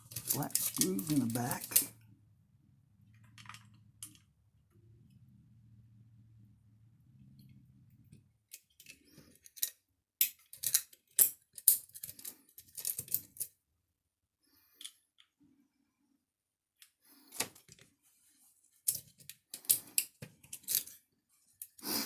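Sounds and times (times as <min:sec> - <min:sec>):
metal screws clicking and rattling: 0:00.0 - 0:01.9, 0:08.5 - 0:13.4.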